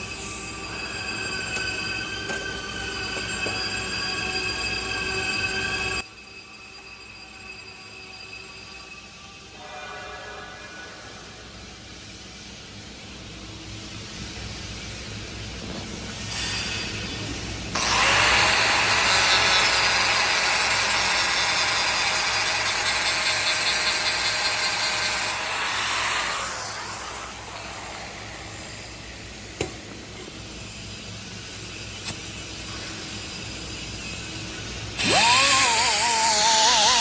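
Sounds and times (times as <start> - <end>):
power tool running: 17.8 - 28.1, 35.0 - 37.0.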